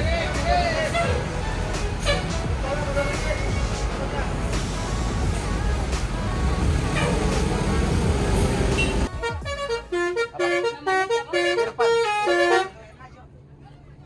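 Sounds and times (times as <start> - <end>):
engine and traffic noise: 0.0 - 14.0
multi-tone bus horn melody: 0.7 - 3.7, 6.8 - 7.7, 8.3 - 13.0.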